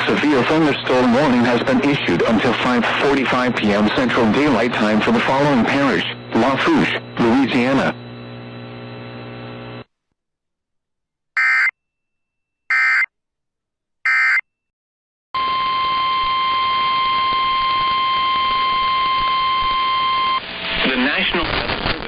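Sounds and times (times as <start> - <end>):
radio static hiss: 0.0 - 9.9, 20.4 - 22.0.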